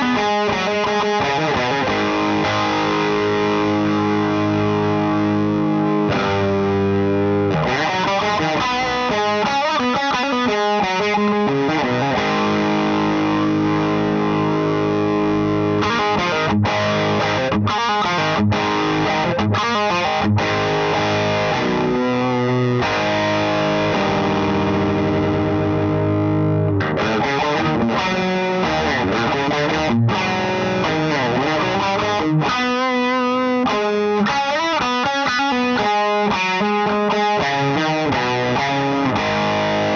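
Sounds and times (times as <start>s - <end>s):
distorted electric guitar: 0.0s - 39.9s.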